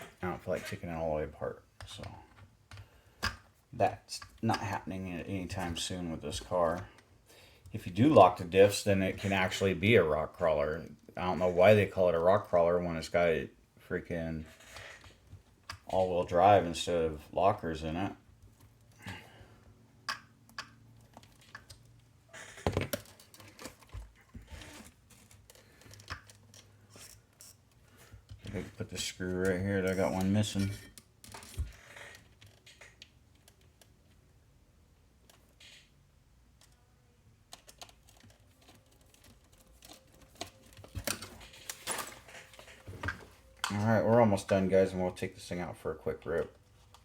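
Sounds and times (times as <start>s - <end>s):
plastic parts clicking and knocking: 1.7s - 4.9s, 20.0s - 34.4s, 35.1s - 43.8s.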